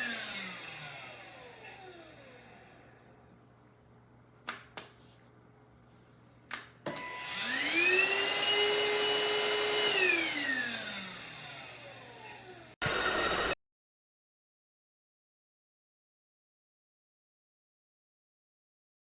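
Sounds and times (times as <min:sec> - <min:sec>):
vacuum motor whine: 0:00.0 - 0:03.0, 0:06.9 - 0:13.6.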